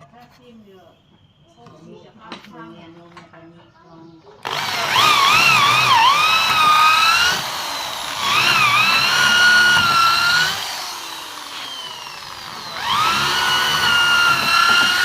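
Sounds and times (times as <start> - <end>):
electric drill boring into wood: 4.4 - 15.0.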